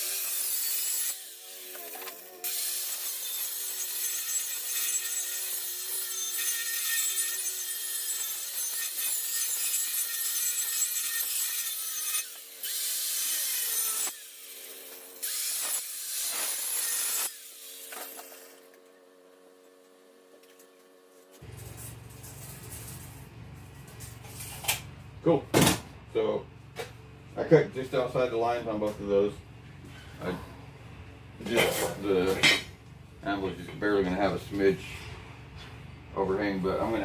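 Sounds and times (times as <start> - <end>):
power tool grinding through steel: 0.0 - 18.8.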